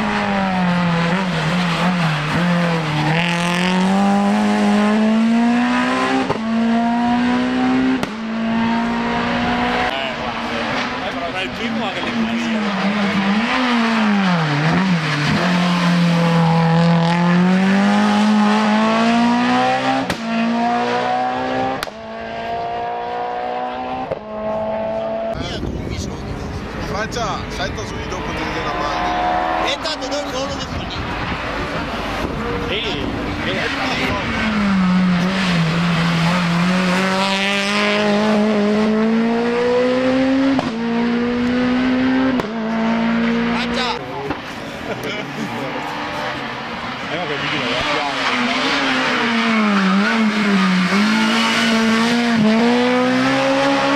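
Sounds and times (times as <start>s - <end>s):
race car engine accelerating: 0.0s - 53.9s
sharp cracks at upshifts: 7.9s - 8.2s, 21.7s - 22.1s, 42.3s - 42.7s, 43.6s - 45.1s.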